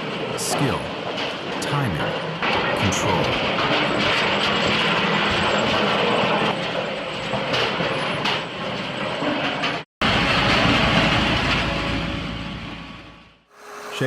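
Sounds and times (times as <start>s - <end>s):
machine mechanical clatter: 0.1s - 9.8s.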